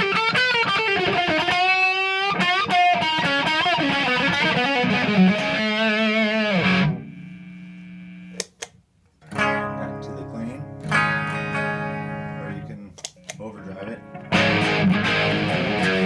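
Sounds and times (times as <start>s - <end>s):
distorted electric guitar lead: 0.0s - 8.4s, 9.3s - 12.6s, 13.9s - 16.0s
sharp clicks: 8.3s - 8.8s, 12.9s - 13.5s.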